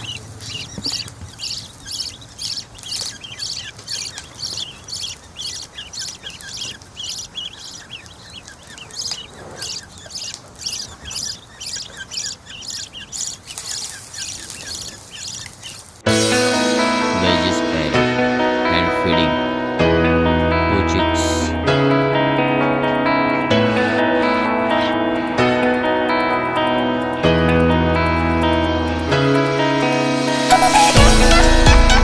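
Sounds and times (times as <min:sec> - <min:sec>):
parrot chicks begging calls: 0:00.0 - 0:16.0, 0:23.6 - 0:25.7
small chirps: 0:00.0 - 0:16.0.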